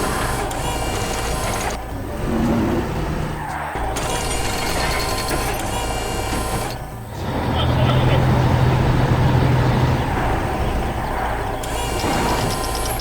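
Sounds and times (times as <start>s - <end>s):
heavy machine engine rumble: 0.0s - 13.0s
mechanical ratcheting and clatter: 3.8s - 6.8s, 11.5s - 13.0s.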